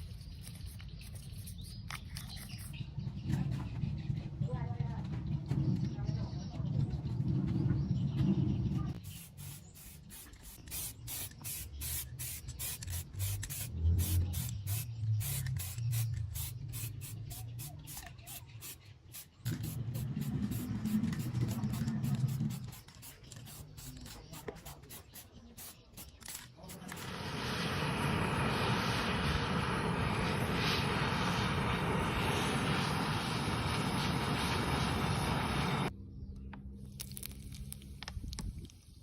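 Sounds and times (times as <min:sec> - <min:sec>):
rhythmic hissing scrubbing strokes: 0:09.0 - 0:35.9
low hum: 0:27.0 - 0:37.9.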